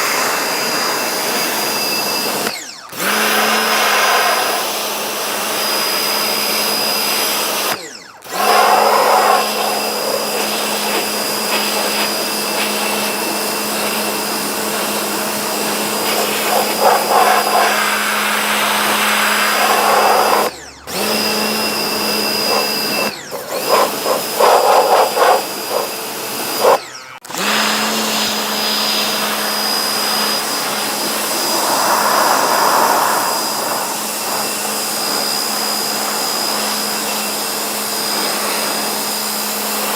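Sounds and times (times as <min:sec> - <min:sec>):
vacuum cleaner running: 0:00.0 - 0:39.9
louder rougher noise: 0:30.1 - 0:36.1.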